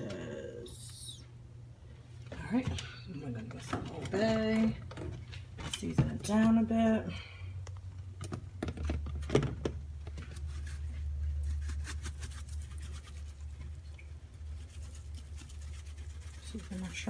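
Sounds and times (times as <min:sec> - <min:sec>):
low steady hum: 0:00.0 - 0:17.0
seasoning shaker rattling: 0:14.5 - 0:17.0.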